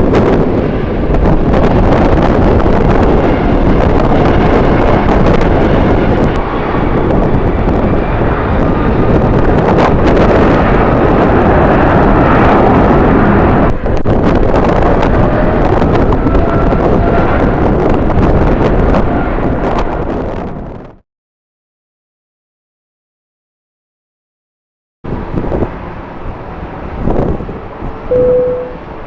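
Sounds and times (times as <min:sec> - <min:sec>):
jet airliner engines: 0:00.0 - 0:21.0, 0:25.1 - 0:29.0
wind buffeting microphone: 0:00.0 - 0:21.0, 0:25.1 - 0:29.0
faint engine whine: 0:25.8 - 0:29.0.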